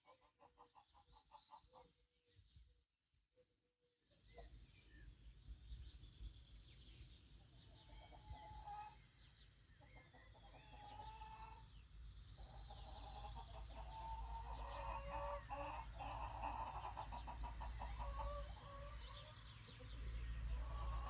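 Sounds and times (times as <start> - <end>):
chickens clucking: 0.0 - 1.9, 7.6 - 9.0, 9.8 - 21.0
small birds chirping: 0.2 - 2.8, 4.0 - 21.0.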